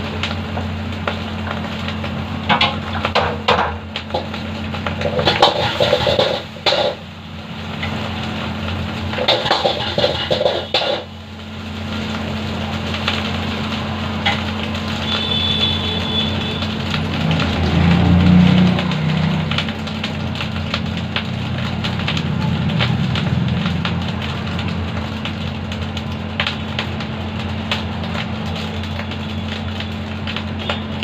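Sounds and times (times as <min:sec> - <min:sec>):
metal spatula clanking on a wok: 0:05.0 - 0:07.0, 0:09.1 - 0:11.1.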